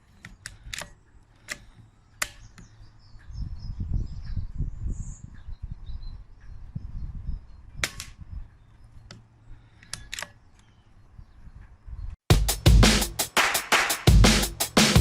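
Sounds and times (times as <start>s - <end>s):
air rifle cracks: 7.8s - 8.2s.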